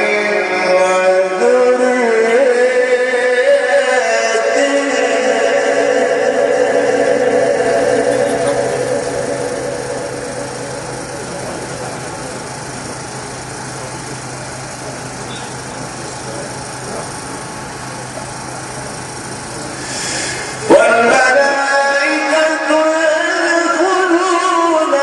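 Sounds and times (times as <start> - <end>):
amplified chanting: 0.0 - 12.8, 20.1 - 25.0
loudspeaker hum and hiss: 0.0 - 25.0
faint crowd murmur: 7.1 - 21.0.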